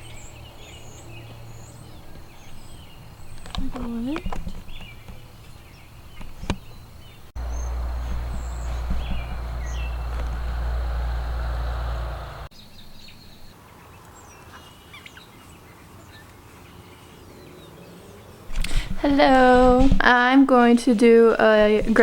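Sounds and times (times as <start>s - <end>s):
wind buffeting microphone: 0.0s - 12.5s
small birds chirping: 0.0s - 19.7s.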